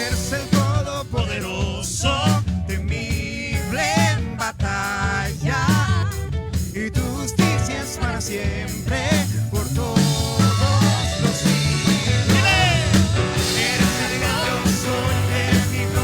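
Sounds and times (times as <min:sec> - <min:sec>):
drum and bass beat: 0:00.0 - 0:16.0
worship band playing: 0:00.0 - 0:16.0
sustained lead melody: 0:10.5 - 0:16.0.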